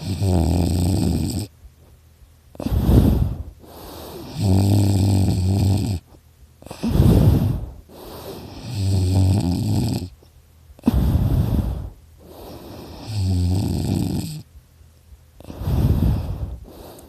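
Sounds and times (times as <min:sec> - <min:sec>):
person snoring: 0:00.0 - 0:01.5, 0:02.6 - 0:10.2, 0:10.8 - 0:14.4, 0:15.4 - 0:17.0
noisy breath puff: 0:00.0 - 0:10.2, 0:10.8 - 0:14.4, 0:15.4 - 0:17.0.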